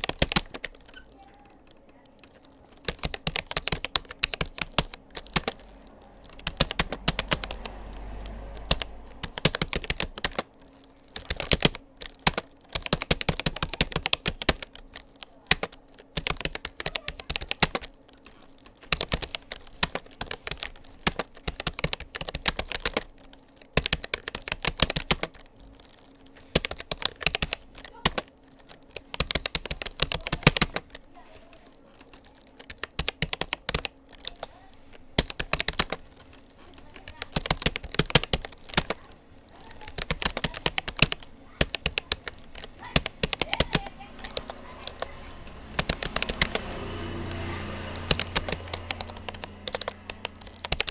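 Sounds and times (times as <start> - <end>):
keyboard key clicks: 1.7 - 10.5, 11.1 - 23.1.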